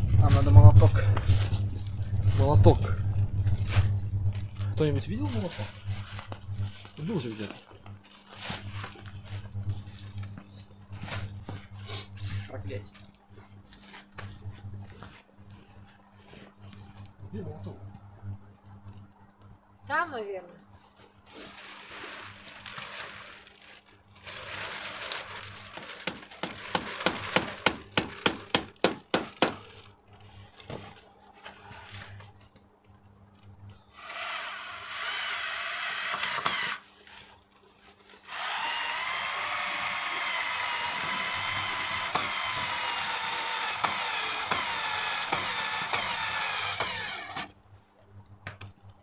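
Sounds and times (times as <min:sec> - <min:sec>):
power drill driving screws: 0:34.0 - 0:37.2, 0:38.3 - 0:47.5.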